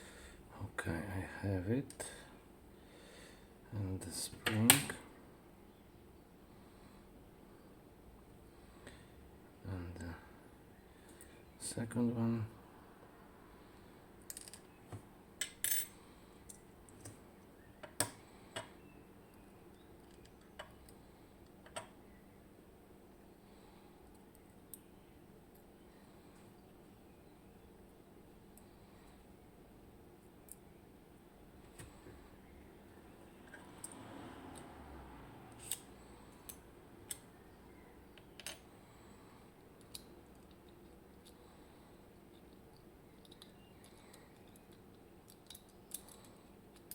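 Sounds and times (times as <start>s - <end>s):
small metal lock parts clicking: 14.3s - 14.7s, 38.2s - 38.7s, 42.3s - 46.9s
small metal parts clinking: 14.3s - 14.7s, 15.4s - 16.0s.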